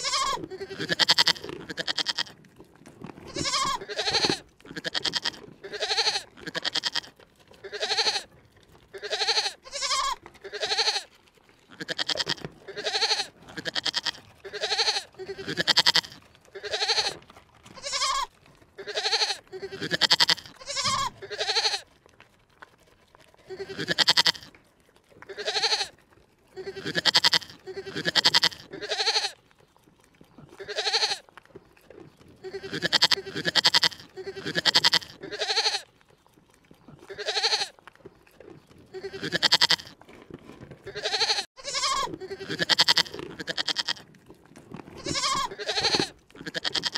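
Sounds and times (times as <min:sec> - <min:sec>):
animal calling: 0:00.0 - 0:02.3, 0:03.3 - 0:08.3, 0:08.9 - 0:11.1, 0:11.7 - 0:21.8, 0:23.5 - 0:24.5, 0:30.2 - 0:31.2, 0:32.0 - 0:35.9, 0:36.7 - 0:40.0, 0:40.8 - 0:44.0, 0:45.0 - 0:46.9.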